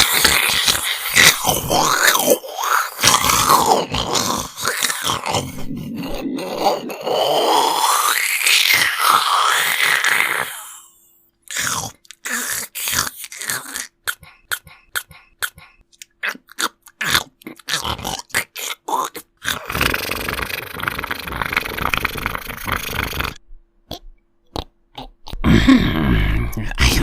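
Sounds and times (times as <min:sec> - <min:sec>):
person making creature noises: 0:00.0 - 0:27.0.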